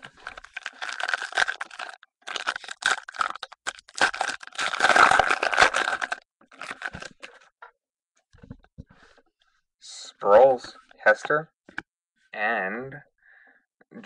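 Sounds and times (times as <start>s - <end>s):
foil wrappers crinkling: 0.0s - 7.4s.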